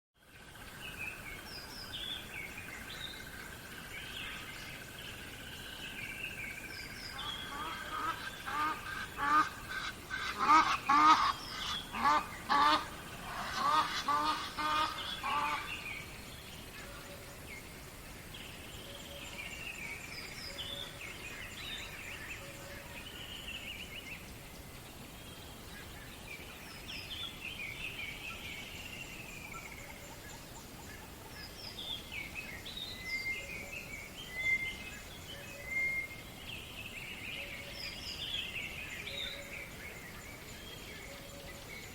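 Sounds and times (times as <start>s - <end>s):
faint steady hiss: 0.2s - 41.9s
bird calls: 0.6s - 17.7s, 25.2s - 41.9s.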